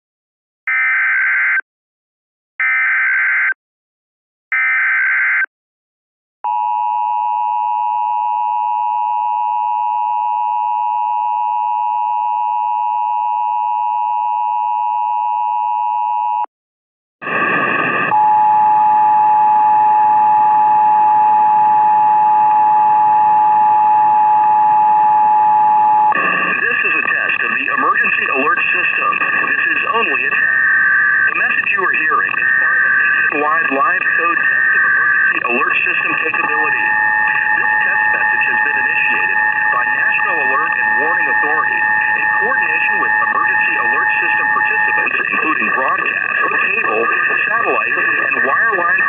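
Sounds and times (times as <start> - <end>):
noise with steady tone: 17.2 - 49.0
screeching data bursts: 28.1 - 49.0.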